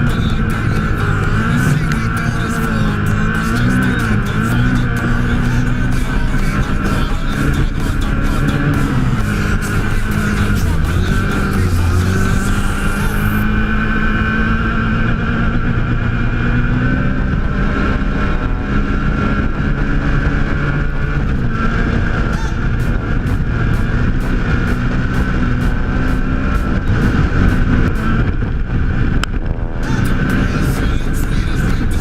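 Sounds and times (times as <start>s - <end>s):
race vehicle engine running: 0.0s - 32.0s.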